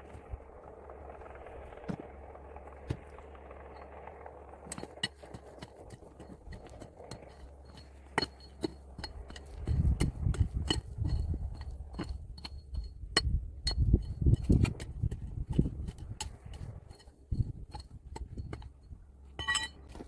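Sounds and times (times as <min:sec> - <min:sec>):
stones clinking together: 0:04.7 - 0:20.0.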